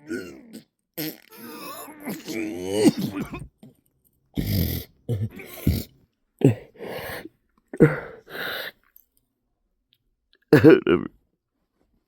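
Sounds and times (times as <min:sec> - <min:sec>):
man groaning and gasping: 0:01.3 - 0:03.6, 0:04.4 - 0:08.7.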